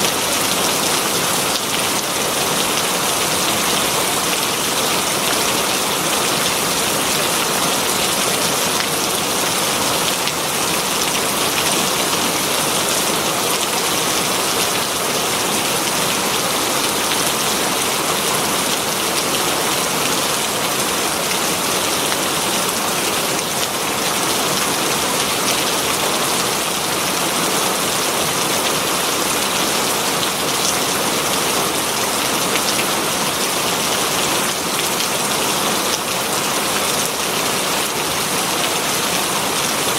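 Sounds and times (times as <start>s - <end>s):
heavy rain on leaves: 0.0s - 39.9s.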